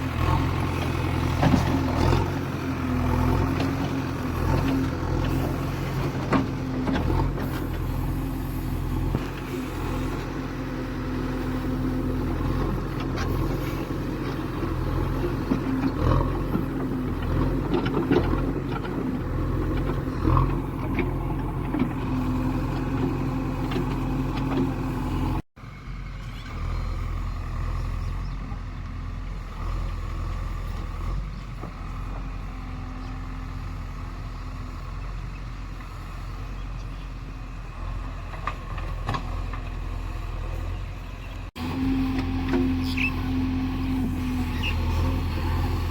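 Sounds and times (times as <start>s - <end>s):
heavy diesel engine running: 0.0s - 45.9s.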